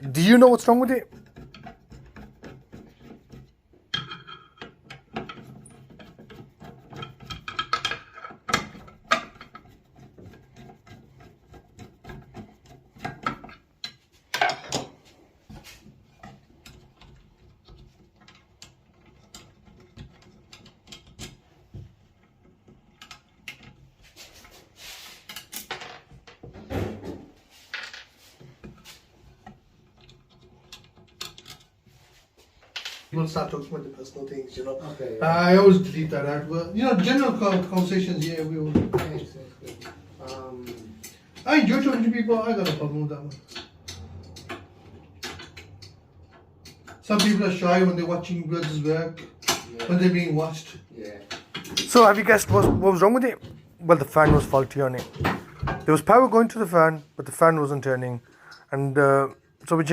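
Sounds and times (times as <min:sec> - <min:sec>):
tools clicking and scraping: 0:01.1 - 0:26.4, 0:27.6 - 0:33.1, 0:39.4 - 0:48.0.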